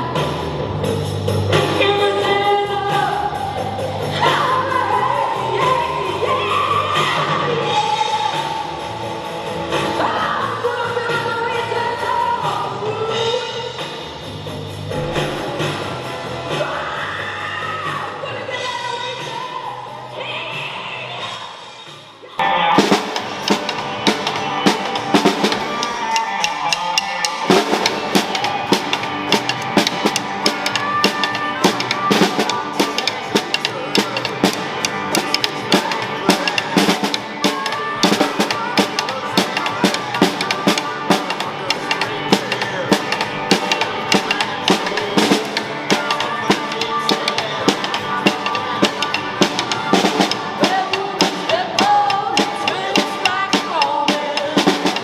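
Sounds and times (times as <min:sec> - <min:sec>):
music with drum-kit beat: 0:22.4 - 0:55.0.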